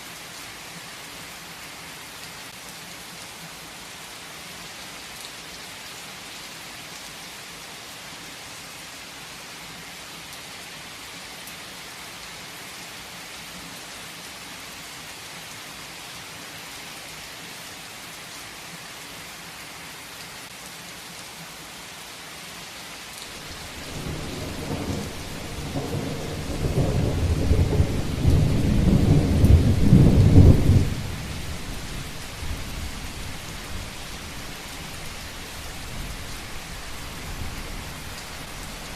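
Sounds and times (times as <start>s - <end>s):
heavy rain falling: 18.0s - 38.9s
thunder rolling: 23.4s - 32.6s.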